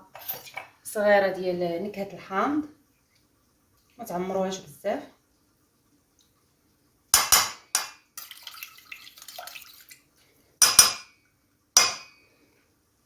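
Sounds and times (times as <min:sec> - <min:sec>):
dishes clinking: 0:10.6 - 0:11.2, 0:11.8 - 0:12.2.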